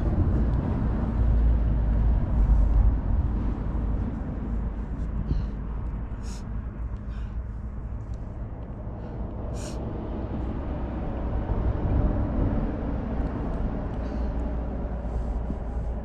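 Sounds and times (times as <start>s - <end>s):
vehicle passing rumble: 0.0s - 16.0s.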